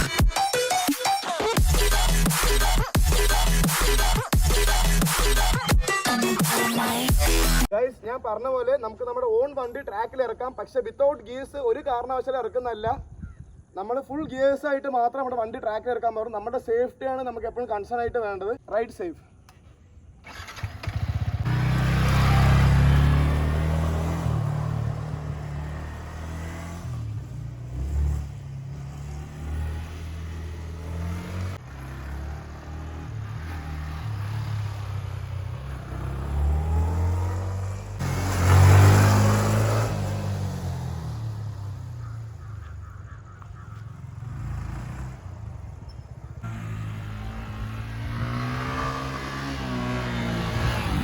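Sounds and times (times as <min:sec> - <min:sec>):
engine revving on race track: 0:20.4 - 0:42.2, 0:44.0 - 0:51.0.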